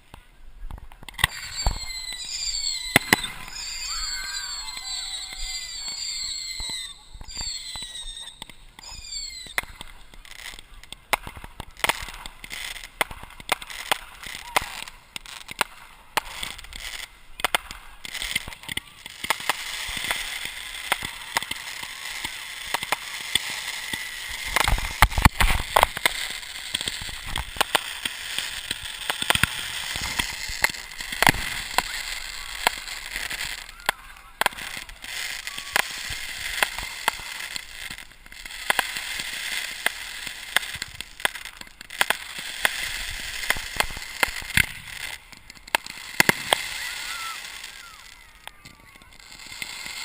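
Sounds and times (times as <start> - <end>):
firework cracks and crackling: 0.0 - 50.0
firework bangs: 0.8 - 50.0
firework whistles falling in pitch: 1.2 - 10.4, 46.2 - 49.0.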